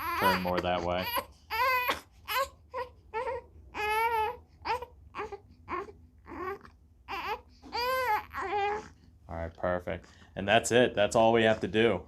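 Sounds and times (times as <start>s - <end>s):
infant crying: 0.0s - 9.0s.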